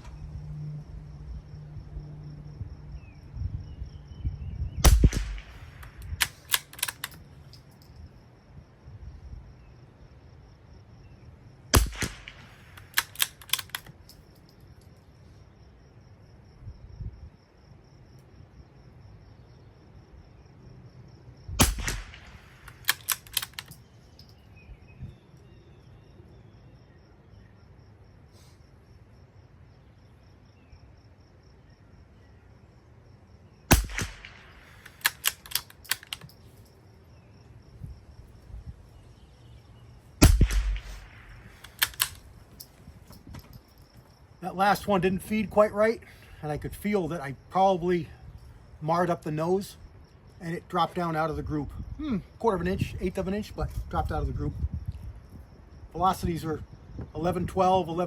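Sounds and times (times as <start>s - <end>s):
rifle shots: 4.8s - 7.2s, 11.7s - 13.9s, 21.6s - 23.7s, 33.7s - 36.3s, 40.2s - 42.2s
rifle action clicks: 4.9s - 7.9s, 11.8s - 14.2s, 21.6s - 24.4s, 33.7s - 36.4s, 40.2s - 42.8s.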